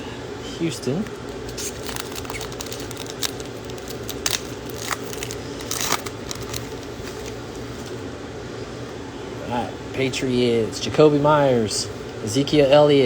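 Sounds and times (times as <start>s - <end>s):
plastic wrapper crinkling: 1.2s - 7.6s
plastic wrapper snaps: 1.5s - 7.4s.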